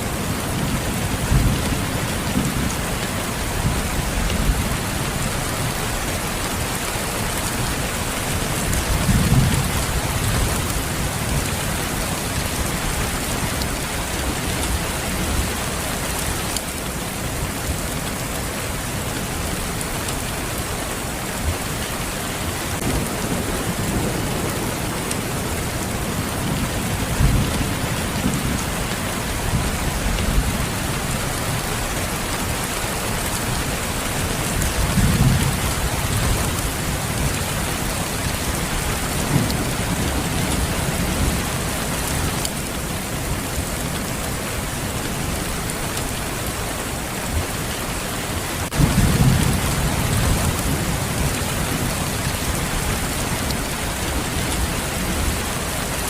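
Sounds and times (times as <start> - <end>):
heavy rain falling: 0.0 - 56.0
thunder rumbling: 48.7 - 53.3.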